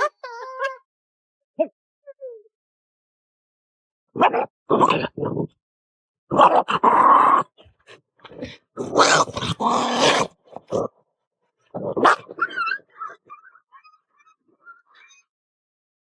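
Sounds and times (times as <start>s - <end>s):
puppy growling: 6.4s - 10.9s.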